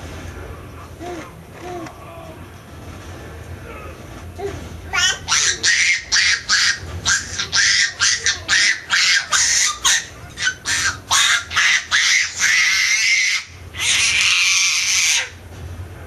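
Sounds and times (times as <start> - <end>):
baby squealing: 4.9 - 15.3.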